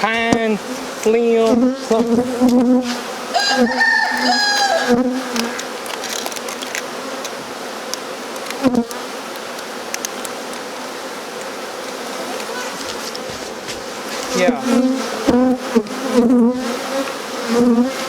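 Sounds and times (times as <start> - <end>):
bees buzzing: 0.0 - 18.0.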